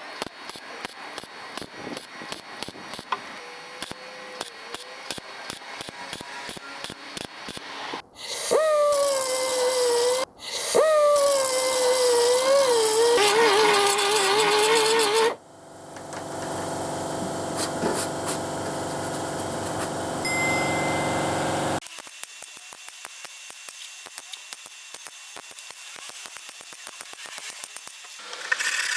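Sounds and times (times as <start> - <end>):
grinder whining on metal: 8.4 - 15.4, 16.0 - 28.9.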